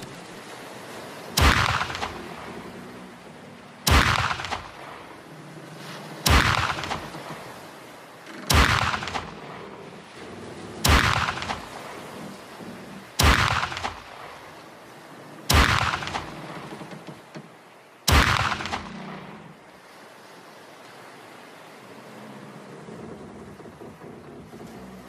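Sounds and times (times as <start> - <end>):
flintlock pistol shots: 3.9 - 4.8, 8.5 - 9.3, 10.9 - 11.7, 13.2 - 14.1, 15.5 - 16.3, 18.1 - 19.0.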